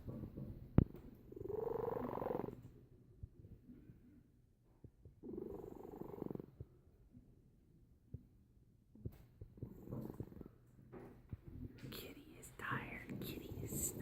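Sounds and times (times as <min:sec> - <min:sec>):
cat snoring: 0:01.3 - 0:02.6, 0:05.2 - 0:06.7, 0:09.6 - 0:10.6, 0:13.0 - 0:14.0.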